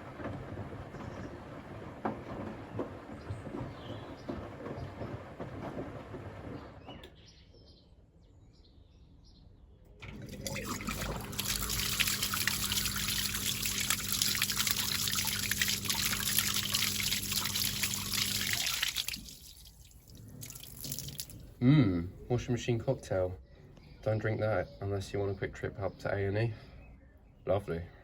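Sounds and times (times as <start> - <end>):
water draining in a stream: 10.0 - 21.6
low steady hum: 10.0 - 23.2.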